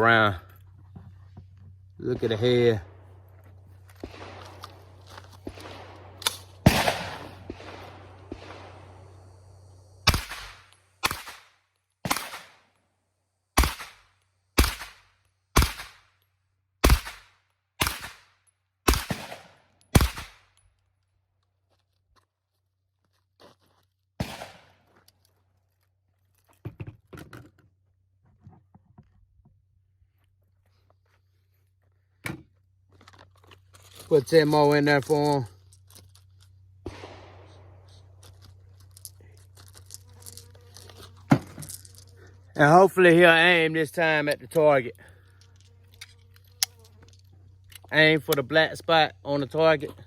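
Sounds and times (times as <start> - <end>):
rifle gunshots: 4.0 - 9.3, 10.0 - 12.6, 13.6 - 15.0, 15.6 - 16.0, 16.8 - 18.3, 18.9 - 20.4, 24.2 - 24.7, 36.8 - 37.9.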